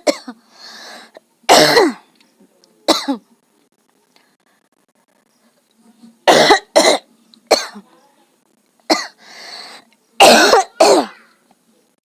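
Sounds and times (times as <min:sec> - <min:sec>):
woman forced coughing: 0:10.2 - 0:11.2.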